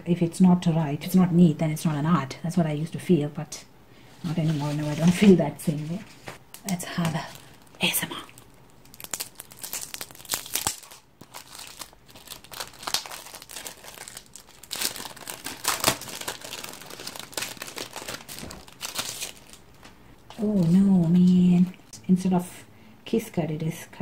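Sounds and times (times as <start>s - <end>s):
paper crinkling and rustling: 8.9s - 21.7s.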